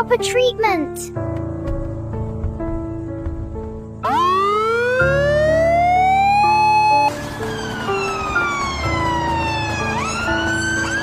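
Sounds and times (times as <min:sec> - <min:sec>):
background music: 0:00.0 - 0:11.0
emergency vehicle siren wailing: 0:04.0 - 0:11.0.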